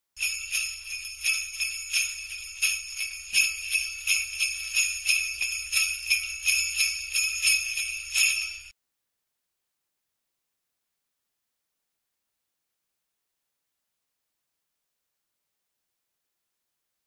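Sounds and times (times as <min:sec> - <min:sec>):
sleigh bells jingling: 0:00.2 - 0:08.8.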